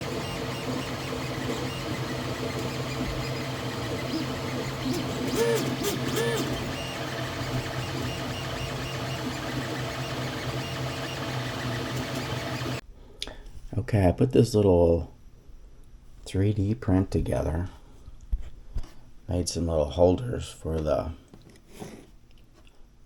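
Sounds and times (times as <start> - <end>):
quadcopter motors buzzing: 0.0 - 12.8.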